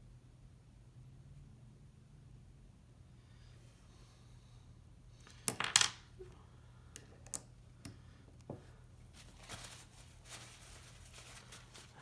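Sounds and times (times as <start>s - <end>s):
small metal parts clinking: 5.3s - 6.0s.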